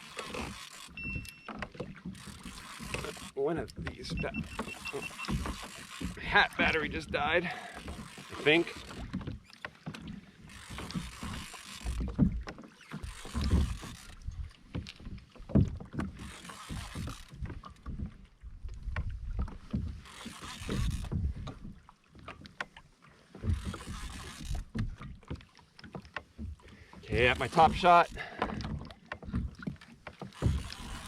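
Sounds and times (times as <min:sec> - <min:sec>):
knocks and clicks of gear: 0:00.0 - 0:07.2, 0:07.8 - 0:31.0
water splashing against kayak hull: 0:00.0 - 0:31.0.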